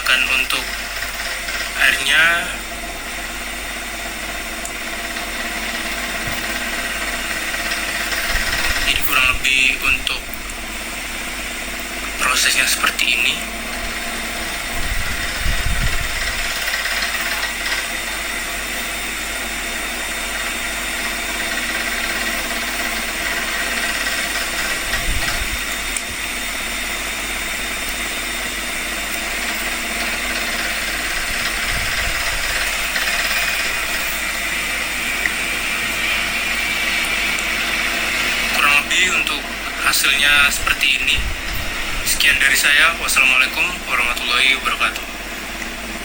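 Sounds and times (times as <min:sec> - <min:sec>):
milling machine cutting: 0:00.0 - 0:46.0
coolant water flowing: 0:13.5 - 0:38.6.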